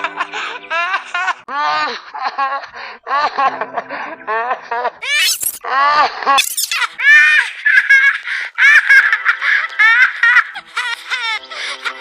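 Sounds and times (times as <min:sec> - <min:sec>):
high-pitched cartoon child voice: 0:05.0 - 0:05.6.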